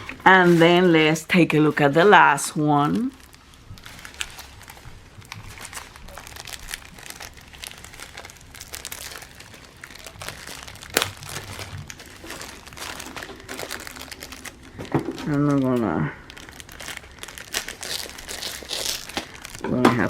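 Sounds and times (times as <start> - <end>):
plastic packaging crinkling: 5.5 - 14.7, 16.3 - 19.6.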